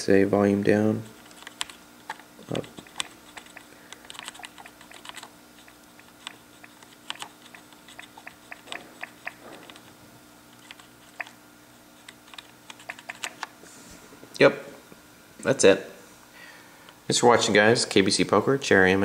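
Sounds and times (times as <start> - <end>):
mechanical keyboard keystrokes: 1.4 - 5.3, 6.2 - 9.9, 12.0 - 13.5.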